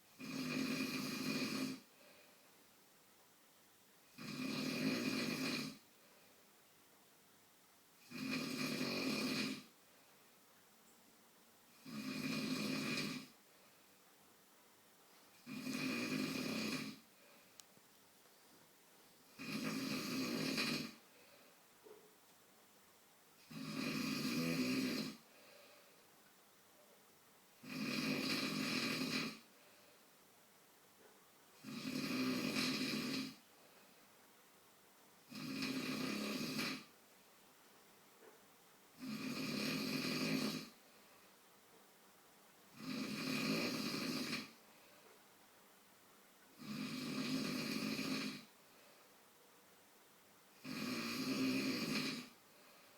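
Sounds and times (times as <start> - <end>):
quiet breathing: 0.0 - 2.9, 4.0 - 6.7, 8.0 - 14.4, 15.0 - 22.4, 23.4 - 27.0, 28.4 - 34.4, 37.6 - 42.0, 42.7 - 45.6, 46.4 - 49.8, 50.4 - 52.9
man snoring: 0.2 - 2.0, 4.1 - 5.9, 8.0 - 9.7, 11.7 - 13.4, 15.4 - 17.3, 19.3 - 21.0, 23.4 - 25.7, 27.6 - 29.5, 31.6 - 33.4, 35.3 - 36.9, 39.0 - 40.8, 42.7 - 44.6, 46.6 - 48.5, 50.6 - 52.8
faint tick: 17.6 - 18.0.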